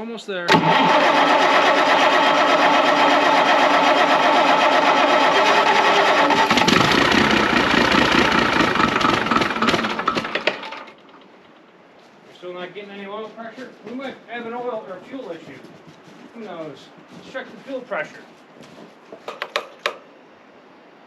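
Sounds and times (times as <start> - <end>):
diesel engine cranking: 0.5 - 11.6.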